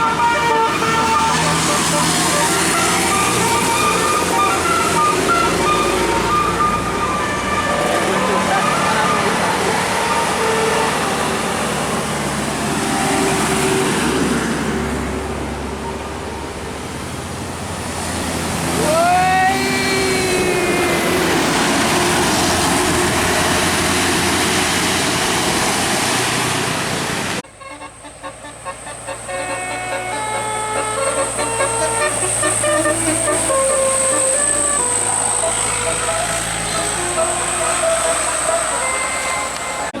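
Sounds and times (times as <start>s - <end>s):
bus air horn: 0.0s - 14.5s, 27.4s - 40.0s
bus passing: 0.0s - 40.0s
traffic noise: 0.0s - 40.0s.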